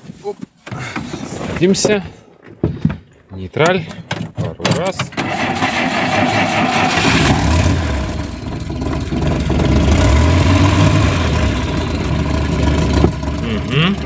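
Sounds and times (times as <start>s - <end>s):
starter motor cranking: 4.8s - 14.0s
engine running with low rumble: 6.9s - 14.0s.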